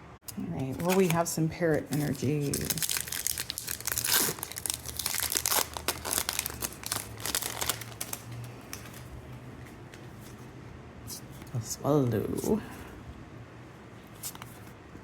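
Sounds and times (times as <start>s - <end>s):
wrapper tearing and crinkling: 0.7s - 1.2s, 1.9s - 9.0s.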